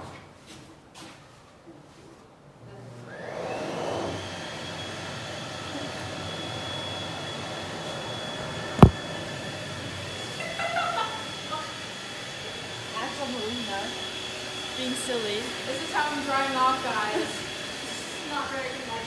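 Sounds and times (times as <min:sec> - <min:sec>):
sharp knock: 0:08.8 - 0:09.0.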